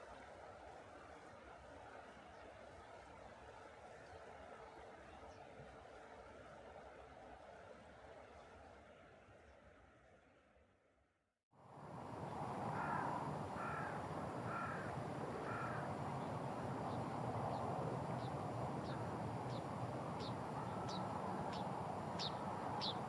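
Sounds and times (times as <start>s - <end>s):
crow cawing: 12.7s - 15.9s.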